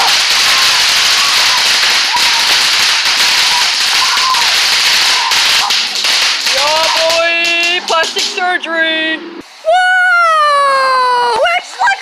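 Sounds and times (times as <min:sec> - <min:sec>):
firework fountain hissing and crackling: 0:00.0 - 0:09.6.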